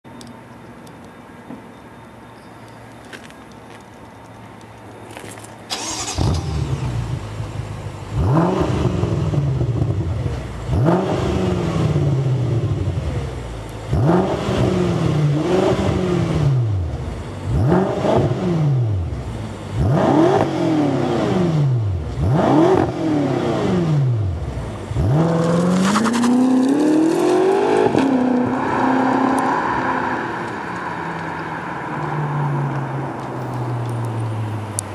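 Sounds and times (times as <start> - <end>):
car pulling away: 5.2 - 34.9
car engine revving: 5.7 - 32.9.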